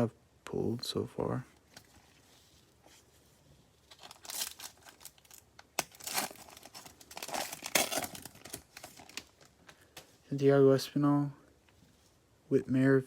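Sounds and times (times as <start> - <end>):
wrapper crinkling and tearing: 3.8 - 9.9.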